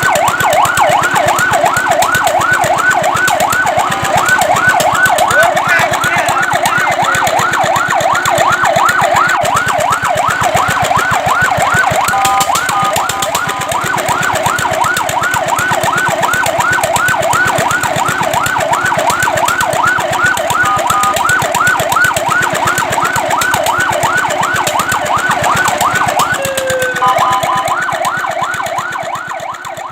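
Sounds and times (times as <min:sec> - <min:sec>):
fire truck siren yelping: 0:00.0 - 0:29.9.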